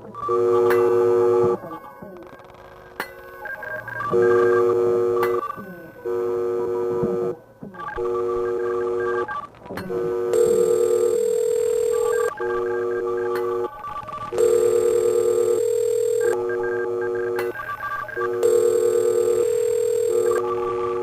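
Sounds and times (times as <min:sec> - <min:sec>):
electronic telephone ringing: 0:03.1 - 0:21.0.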